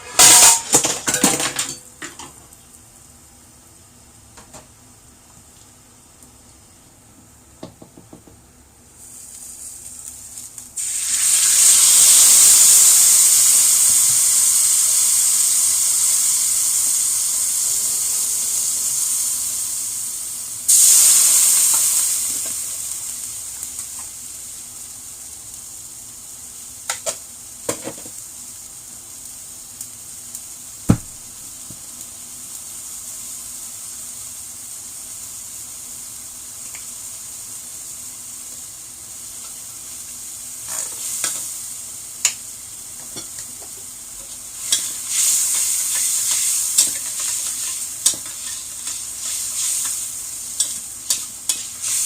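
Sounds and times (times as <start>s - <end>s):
hot oil sizzling: 0.0s - 7.8s, 8.5s - 52.0s.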